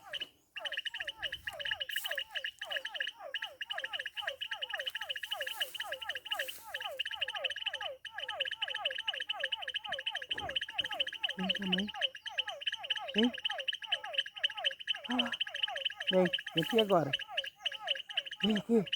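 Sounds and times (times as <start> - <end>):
chorus of frogs calling: 0.0 - 18.9.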